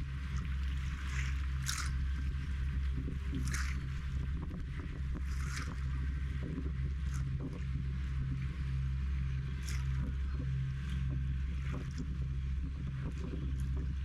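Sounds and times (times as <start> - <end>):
boat engine humming: 0.0 - 14.0
water splashing: 0.3 - 2.4, 3.0 - 4.5, 5.1 - 5.9.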